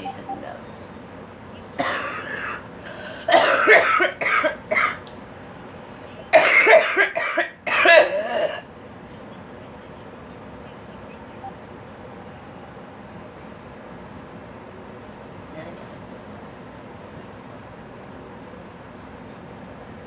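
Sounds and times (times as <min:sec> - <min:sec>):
girl coughing: 0:01.8 - 0:05.0, 0:06.3 - 0:08.7.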